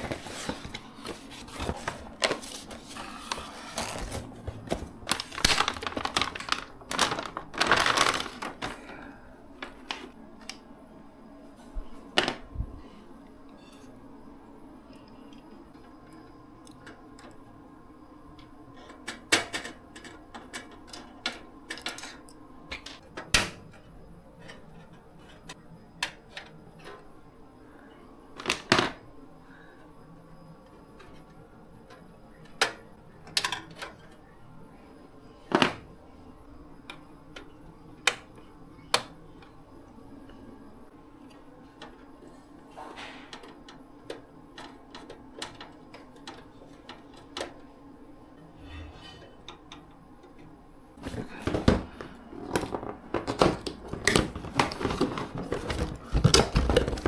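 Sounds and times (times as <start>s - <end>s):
low steady hum: 0.0s - 57.0s.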